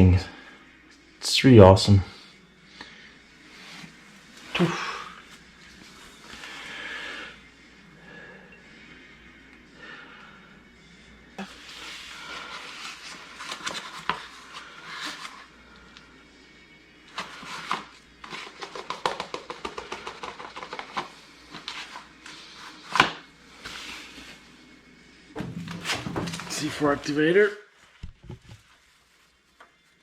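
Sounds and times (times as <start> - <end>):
rustling and scraping handling: 11.4 - 15.5, 17.1 - 23.0, 23.6 - 24.6, 25.4 - 30.0.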